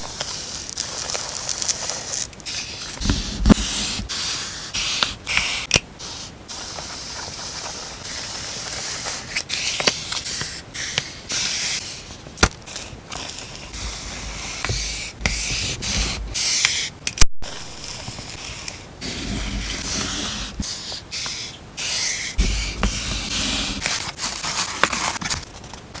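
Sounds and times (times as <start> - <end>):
plastic packaging rustling: 0.0 - 4.1
soft thuds: 13.7 - 16.4, 22.4 - 23.9.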